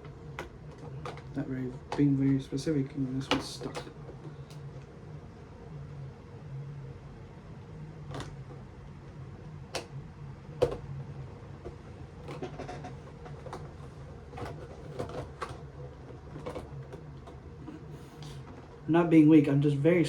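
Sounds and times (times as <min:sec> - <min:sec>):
plastic parts clicking and knocking: 0:00.3 - 0:02.4, 0:03.2 - 0:04.6, 0:10.6 - 0:10.9, 0:11.6 - 0:17.4.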